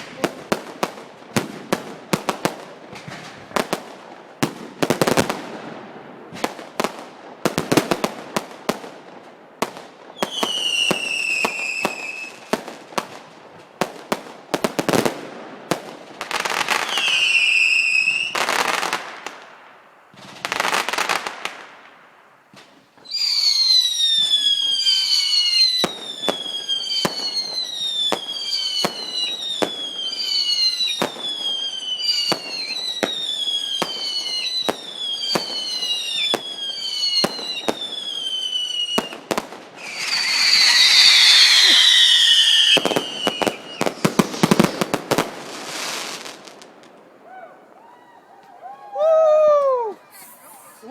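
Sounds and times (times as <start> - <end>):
fireworks bangs and crackling: 0.0 - 48.0
firework whistles: 10.1 - 12.5, 16.5 - 18.8, 23.0 - 39.2, 39.8 - 46.5, 49.1 - 50.9.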